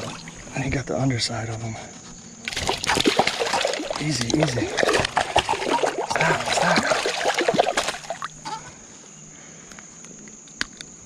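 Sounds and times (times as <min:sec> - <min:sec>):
high insect drone: 0:00.0 - 0:11.0
fish splashing in water: 0:02.5 - 0:08.4.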